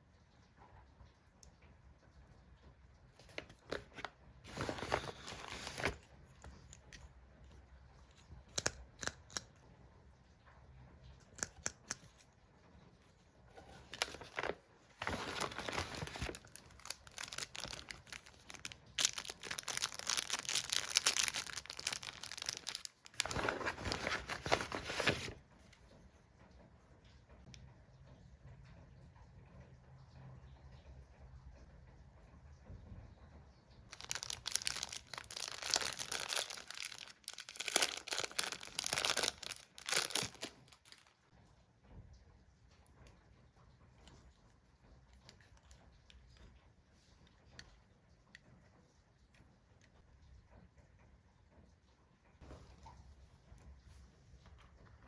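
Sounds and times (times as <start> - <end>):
packaging crinkling and tearing: 3.2 - 7.1, 13.5 - 25.4, 33.9 - 41.1.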